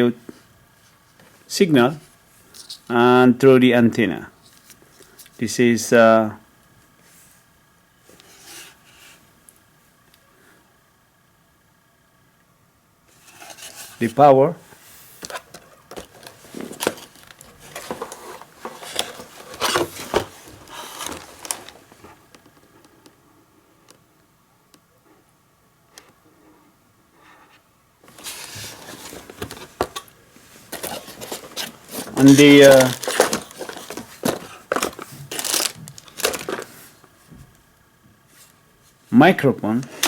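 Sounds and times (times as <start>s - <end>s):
rustling: 13.1s - 22.8s, 28.0s - 37.3s.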